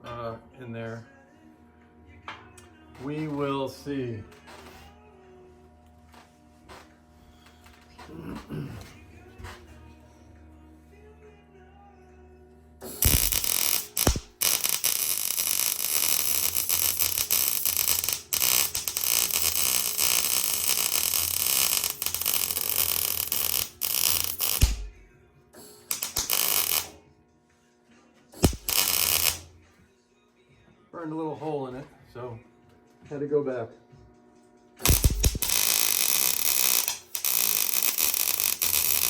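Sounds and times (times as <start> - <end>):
welder arc crackling: 12.8 - 27.0, 28.4 - 29.5, 34.8 - 39.0.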